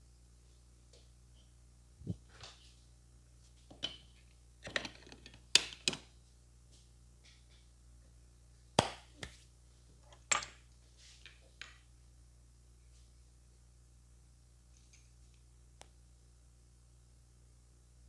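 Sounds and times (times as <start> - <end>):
hand slaps and claps: 8.8 - 9.4.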